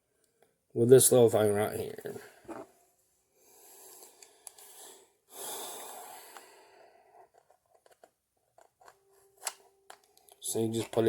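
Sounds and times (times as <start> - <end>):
person breathing: 3.3 - 7.4.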